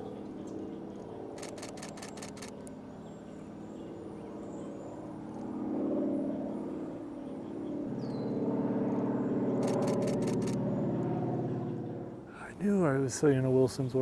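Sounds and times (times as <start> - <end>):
camera shutter clicks: 1.4 - 2.7, 9.6 - 10.6
vehicle engine hum: 1.4 - 2.7, 9.6 - 11.6.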